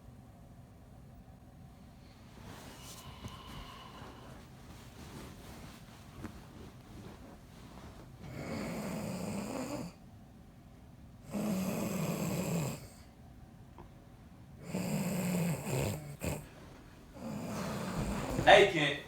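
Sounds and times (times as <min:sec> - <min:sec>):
man snoring heavily: 0:08.3 - 0:09.9, 0:11.3 - 0:13.0, 0:14.6 - 0:16.5, 0:17.2 - 0:18.9.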